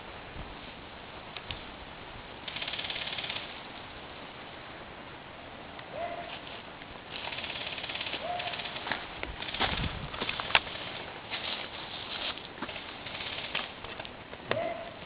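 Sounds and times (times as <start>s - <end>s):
airsoft gun full-auto bursts: 2.5s - 3.5s, 7.2s - 9.6s, 13.0s - 13.6s.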